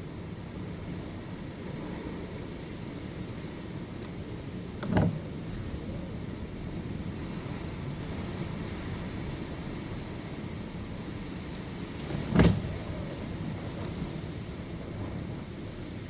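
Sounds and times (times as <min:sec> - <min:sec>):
storm wind rumble: 0:00.0 - 0:16.0
sharp thump: 0:12.3 - 0:12.7.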